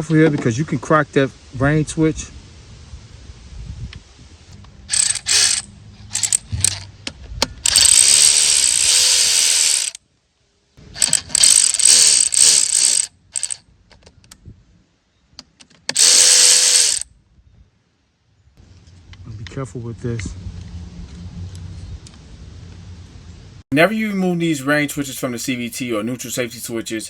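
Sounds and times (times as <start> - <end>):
ratchet wrench clicking: 4.9 - 5.6, 6.2 - 6.8, 7.7 - 10.0, 11.0 - 13.6, 15.9 - 17.0.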